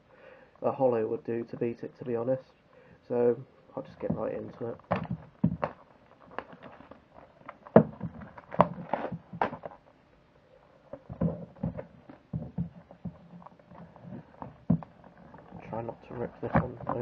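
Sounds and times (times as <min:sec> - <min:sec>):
cardboard box being opened by hand: 0:04.0 - 0:09.8.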